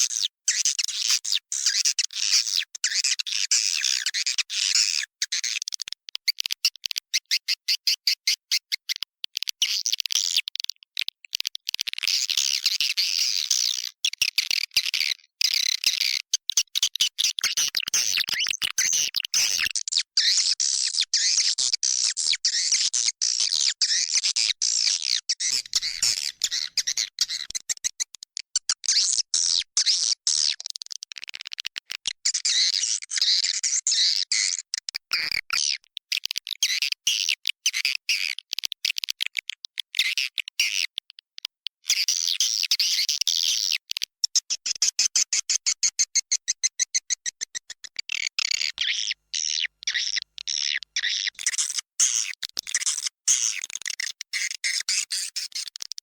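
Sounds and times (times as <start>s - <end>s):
birds twittering and chirping: 25.4s - 27.6s.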